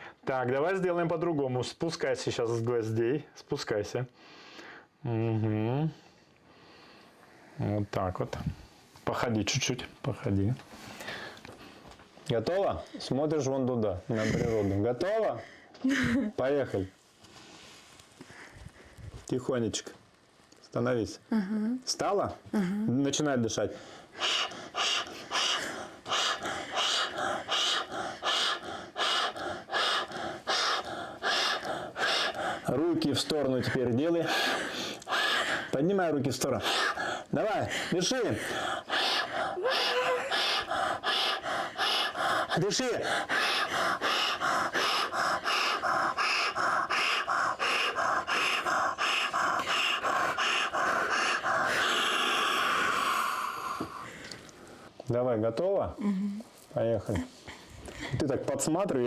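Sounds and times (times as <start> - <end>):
woman breathing hard: 10.8 - 11.8, 23.8 - 54.9
long exhale: 38.4 - 54.9.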